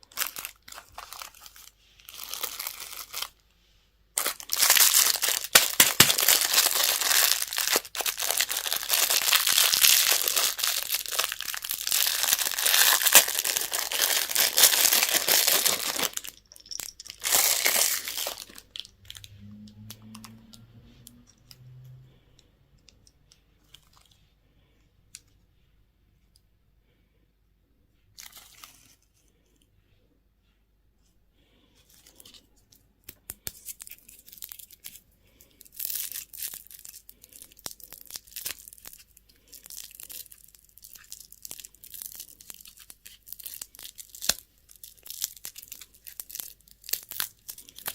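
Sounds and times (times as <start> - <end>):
wrapper crinkling and tearing: 0.0 - 3.4, 4.2 - 20.3, 33.5 - 35.0, 35.6 - 47.9.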